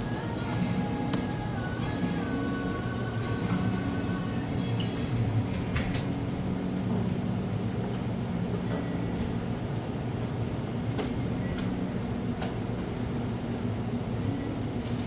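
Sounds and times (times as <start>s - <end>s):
espresso grinder humming: 0.0s - 5.0s.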